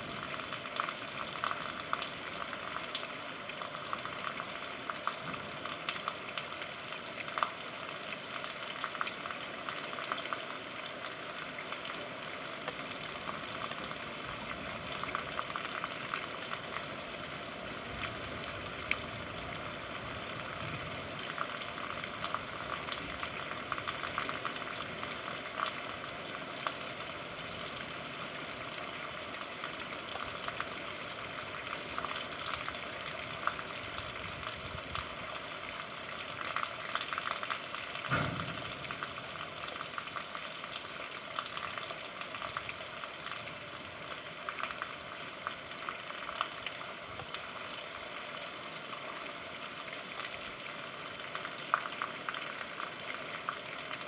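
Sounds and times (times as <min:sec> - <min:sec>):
steady rain: 0:00.0 - 0:54.0
raindrop ticks: 0:36.3 - 0:42.8.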